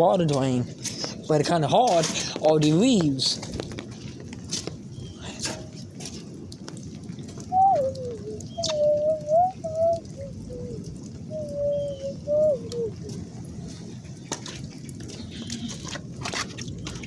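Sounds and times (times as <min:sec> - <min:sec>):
running water: 0:00.0 - 0:17.0
low whistling: 0:07.4 - 0:13.2.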